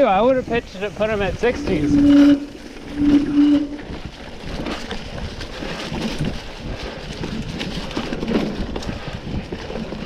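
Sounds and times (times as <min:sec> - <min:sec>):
bike tyres on dirt trail: 0:00.0 - 0:10.0
bike knocks and rattles: 0:03.8 - 0:10.0.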